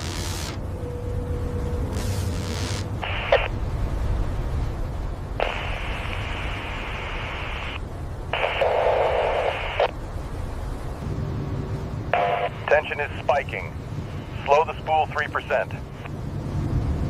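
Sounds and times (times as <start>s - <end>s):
radio static hiss: 0.0s - 0.6s, 1.9s - 3.6s, 5.3s - 10.0s, 12.1s - 16.2s
steady low rumble: 0.0s - 17.0s.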